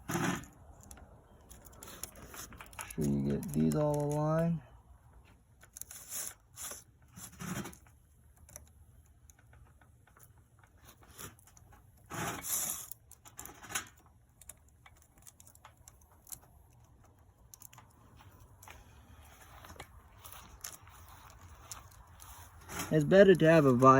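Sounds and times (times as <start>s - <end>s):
saw chain clicking and rattling: 11.5s - 23.9s.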